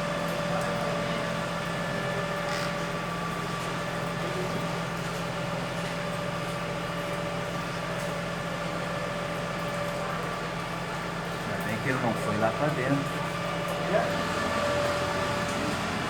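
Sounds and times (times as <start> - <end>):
steady mechanical hum: 0.0 - 16.0.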